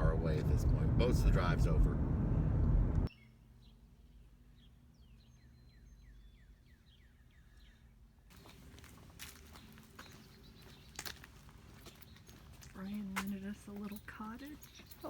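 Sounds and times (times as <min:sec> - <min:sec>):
car road noise: 0:00.0 - 0:03.1
bird chirping: 0:03.1 - 0:15.0.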